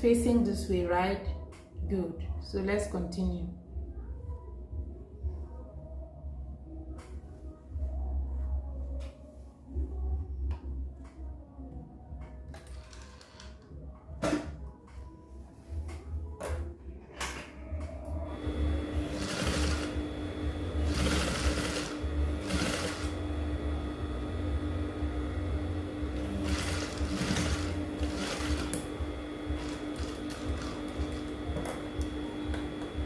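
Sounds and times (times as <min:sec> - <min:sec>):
electric sewing machine running: 0:18.3 - 0:33.0.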